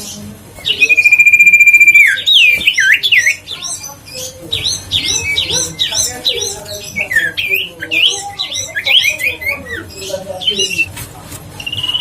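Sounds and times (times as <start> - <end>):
bird whistling notes: 0.6 - 3.5.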